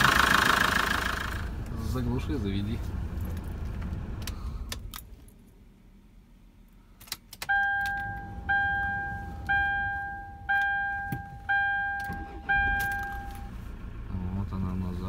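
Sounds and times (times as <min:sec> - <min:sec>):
diesel engine shutting off: 0:00.0 - 0:02.3, 0:11.4 - 0:15.0
ignition key clicks: 0:07.0 - 0:08.3, 0:10.5 - 0:13.5
dashboard warning chime beeping: 0:07.5 - 0:13.6.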